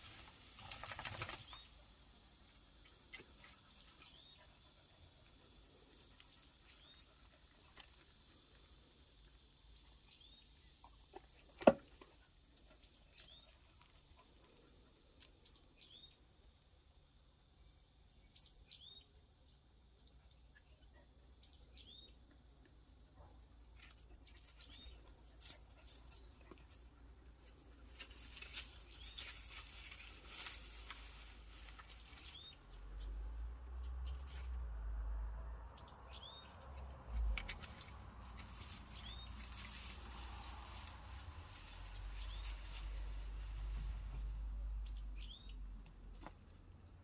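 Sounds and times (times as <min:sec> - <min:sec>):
steps through undergrowth: 0:24.6 - 0:32.7, 0:37.1 - 0:44.6.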